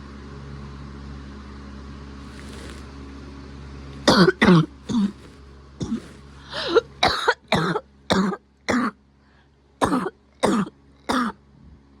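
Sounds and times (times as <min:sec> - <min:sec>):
throaty sound: 0:04.0 - 0:08.9
person coughing: 0:04.1 - 0:09.0, 0:09.8 - 0:11.4.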